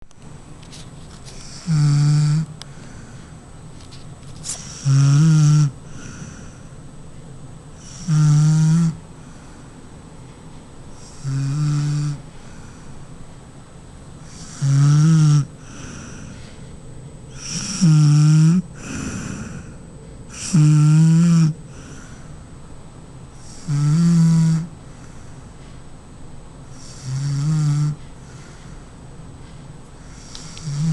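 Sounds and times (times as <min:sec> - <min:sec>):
woman snoring: 0:01.4 - 0:02.6, 0:04.5 - 0:06.6, 0:07.8 - 0:09.0, 0:11.0 - 0:12.8, 0:14.2 - 0:16.5, 0:17.3 - 0:22.2, 0:23.4 - 0:24.7, 0:26.7 - 0:28.0, 0:30.0 - 0:30.9
soft breaths: 0:02.3 - 0:04.9, 0:05.8 - 0:06.9, 0:09.1 - 0:13.4, 0:15.5 - 0:17.8, 0:21.6 - 0:22.6, 0:24.8 - 0:26.0, 0:27.9 - 0:30.9.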